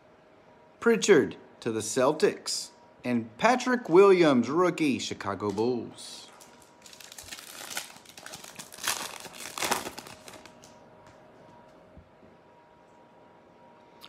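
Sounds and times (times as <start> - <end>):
foil wrapper tearing and crinkling: 6.4 - 10.8.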